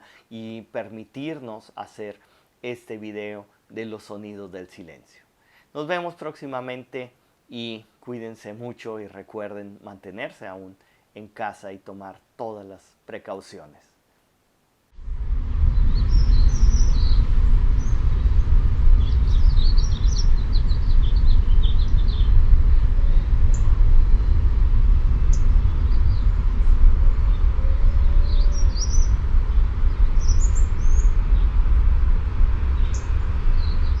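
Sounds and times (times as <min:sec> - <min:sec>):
loud steady low rumble: 0:14.9 - 0:34.0
birds chirping: 0:15.8 - 0:17.2, 0:19.0 - 0:22.8, 0:28.2 - 0:29.2, 0:29.8 - 0:31.4.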